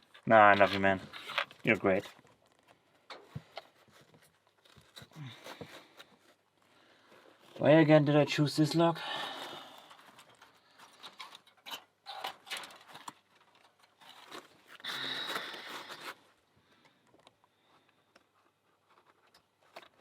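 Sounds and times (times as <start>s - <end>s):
scraping and rustling on padlock: 0.0s - 7.8s, 9.8s - 14.8s, 17.0s - 20.0s.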